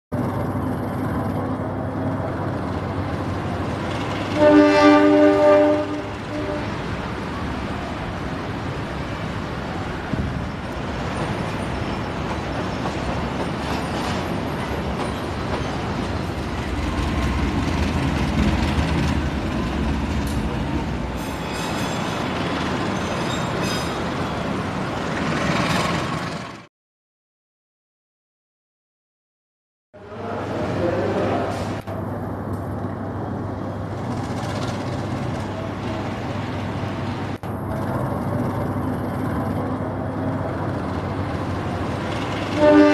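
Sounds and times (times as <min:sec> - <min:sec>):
freight train rumbling past: 0:00.1 - 0:26.7, 0:30.0 - 0:42.9
locomotive horn blast: 0:04.3 - 0:06.8, 0:42.5 - 0:42.9.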